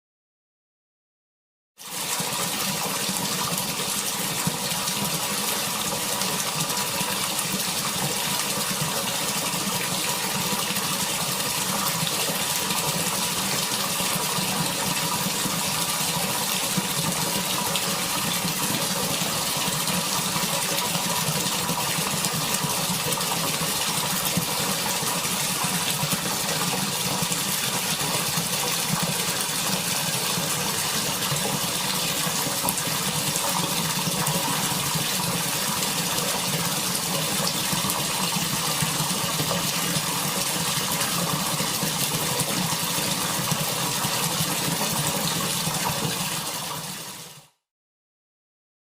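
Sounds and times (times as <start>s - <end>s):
water pouring into a bucket: 1.8s - 47.6s.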